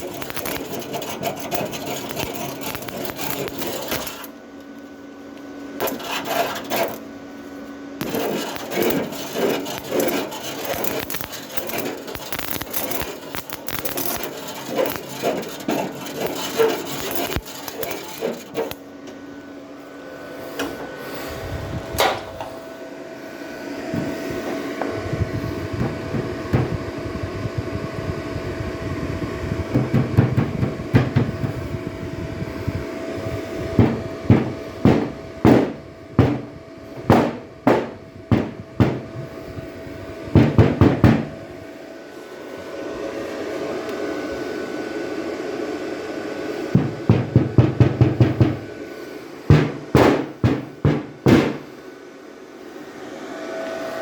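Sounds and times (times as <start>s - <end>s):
steady hum: 0.0s - 54.0s
taps on sheet metal: 29.7s - 31.6s, 33.8s - 39.2s, 40.4s - 41.3s, 46.7s - 48.7s, 49.5s - 51.6s.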